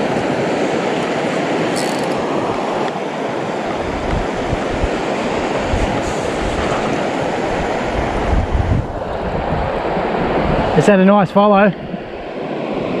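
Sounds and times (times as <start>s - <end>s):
water rushing over rocks: 0.0s - 13.0s
wind buffeting microphone: 0.0s - 13.0s.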